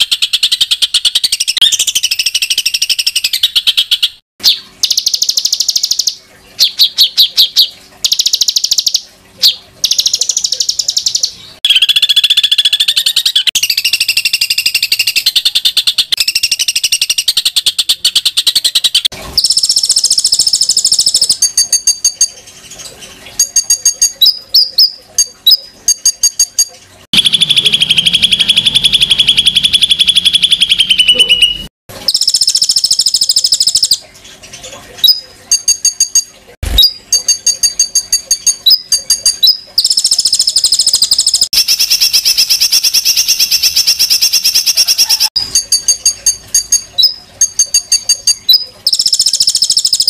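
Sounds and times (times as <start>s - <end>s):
songbird trills and rapid notes: 0.0s - 50.0s.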